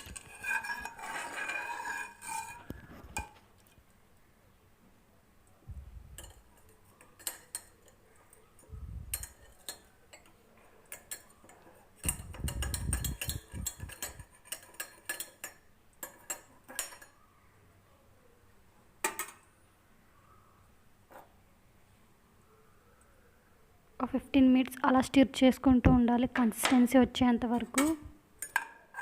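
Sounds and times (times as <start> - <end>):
metal spoon scraping a pan: 0.0 - 3.4, 6.2 - 8.0, 9.1 - 17.2, 27.5 - 29.0.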